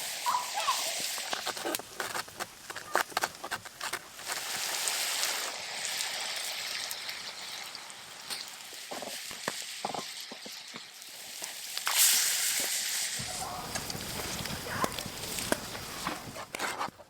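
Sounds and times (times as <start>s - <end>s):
rushing stream water: 13.2s - 16.5s.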